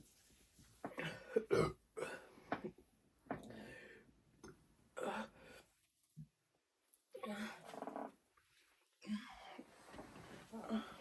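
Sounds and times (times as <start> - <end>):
person burping: 1.0 - 2.3.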